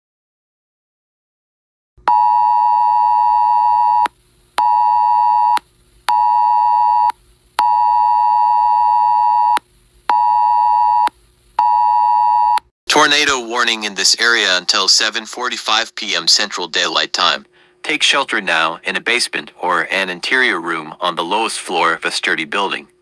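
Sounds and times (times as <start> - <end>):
two-tone alarm beep: 2.1 - 12.6.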